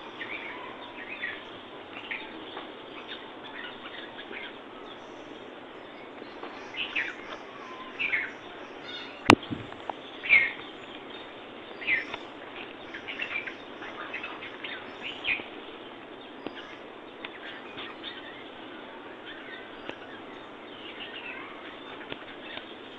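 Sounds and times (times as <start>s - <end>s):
small birds chirping: 0.0s - 22.9s
steady background hiss: 0.0s - 22.9s.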